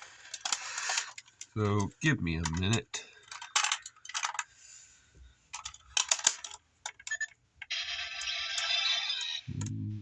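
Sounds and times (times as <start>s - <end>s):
plastic toy pieces clicking: 0.2s - 1.8s, 2.4s - 4.5s, 5.5s - 7.4s.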